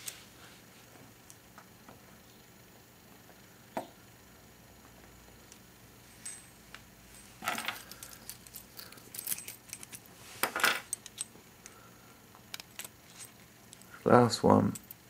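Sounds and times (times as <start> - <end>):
metal keys and locks clinking: 7.2 - 11.3, 12.6 - 13.4
keys jangling: 7.4 - 10.0.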